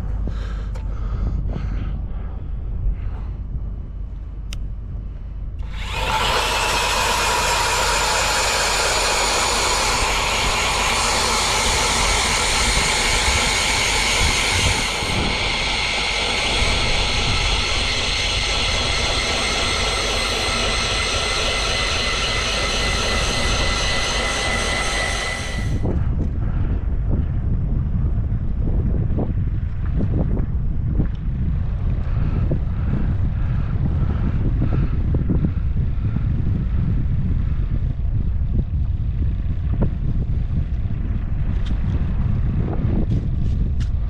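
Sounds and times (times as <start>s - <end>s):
wind rumble on microphone: 0.0s - 44.0s
electric ice auger drilling: 5.6s - 26.0s.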